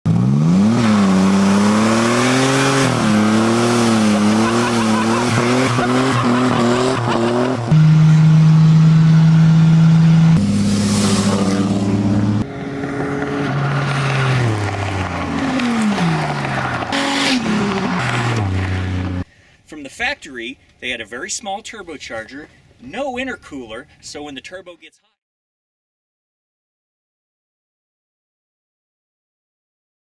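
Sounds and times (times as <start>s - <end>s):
car engine revving: 0.1s - 19.3s.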